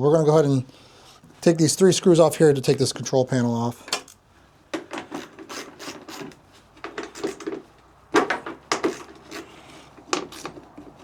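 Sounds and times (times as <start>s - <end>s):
screws and panel clicks and scrapes: 4.8s - 7.7s, 8.3s - 10.9s.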